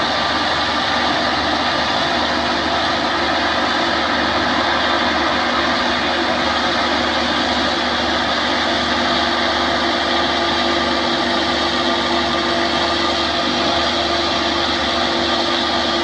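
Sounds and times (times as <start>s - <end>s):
farm machinery engine running: 0.0s - 16.0s.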